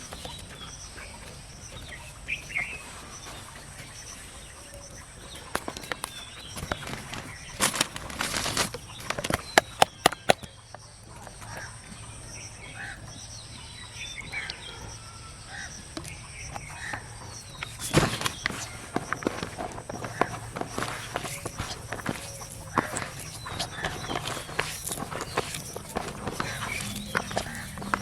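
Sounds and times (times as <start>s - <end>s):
birds chirping faintly: 0.0s - 28.0s
rustling: 5.4s - 10.5s, 17.4s - 28.0s
sharp clicks and knocks: 5.6s - 10.5s.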